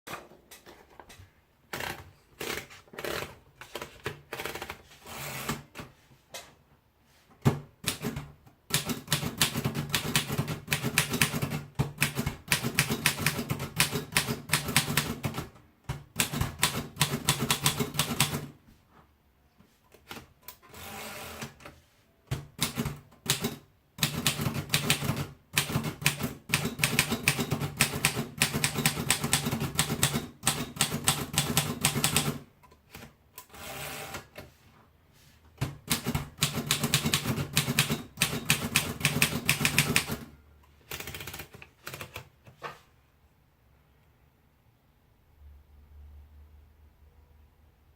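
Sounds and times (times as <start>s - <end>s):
typewriter keystrokes: 7.8s - 18.5s, 22.5s - 33.1s, 35.6s - 40.3s.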